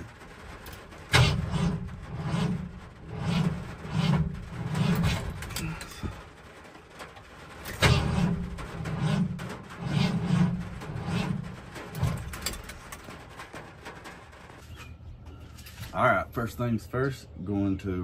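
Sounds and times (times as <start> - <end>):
engine starting: 7.6 - 12.8.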